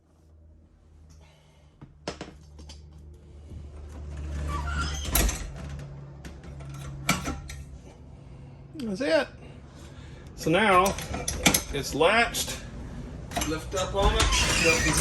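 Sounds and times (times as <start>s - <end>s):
metal door latch clicking and scraping: 4.2s - 7.7s, 10.8s - 11.8s.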